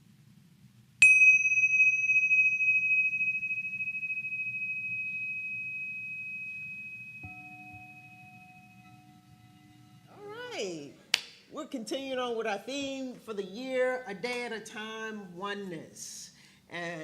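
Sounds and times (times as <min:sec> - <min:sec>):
small bell ringing high: 0:01.0 - 0:09.7
lower-pitched bell ringing: 0:01.0 - 0:10.2.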